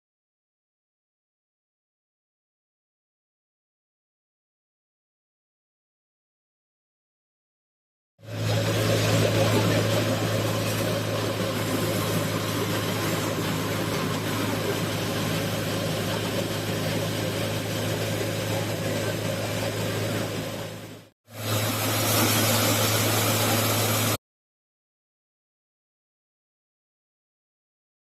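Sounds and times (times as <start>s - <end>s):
threshing machine hum: 8.2s - 24.2s
rushing rattling of threshed crop: 8.3s - 24.2s.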